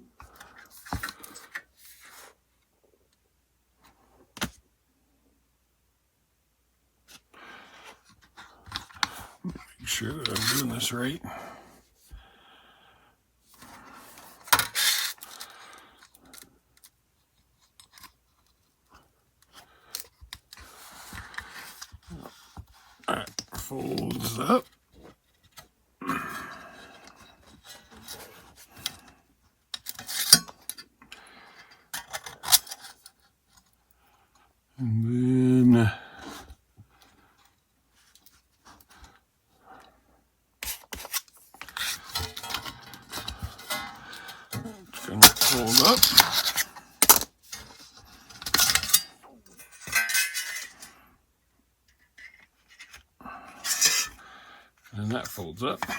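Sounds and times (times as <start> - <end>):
metal tool scraping: 40.6 - 47.7, 48.3 - 50.9, 53.6 - 54.2.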